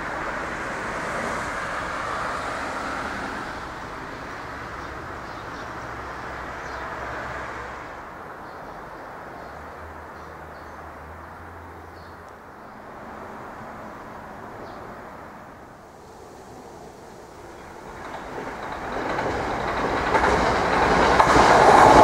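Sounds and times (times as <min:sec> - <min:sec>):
vehicle passing: 0:00.0 - 0:08.1.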